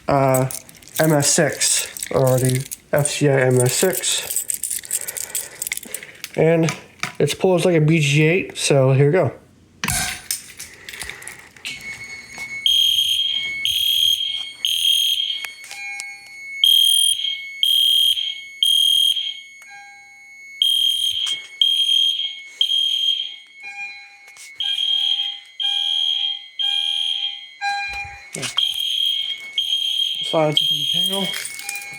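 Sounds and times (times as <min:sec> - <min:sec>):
fire alarm horn blasts: 0:11.6 - 0:31.9.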